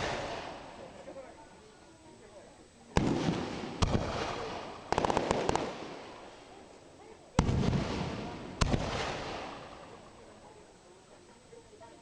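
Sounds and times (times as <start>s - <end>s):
fireworks booms rumbling: 0.0s - 0.9s, 3.0s - 6.5s, 7.3s - 10.1s
fireworks crackling bangs: 0.0s - 1.0s, 2.9s - 6.6s, 7.3s - 10.1s.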